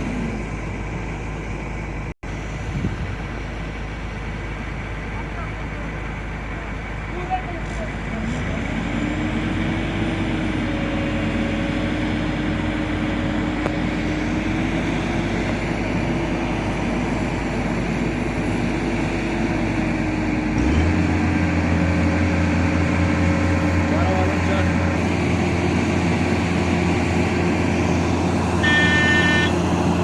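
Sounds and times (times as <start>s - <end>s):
vehicle engine humming: 0.0s - 30.0s.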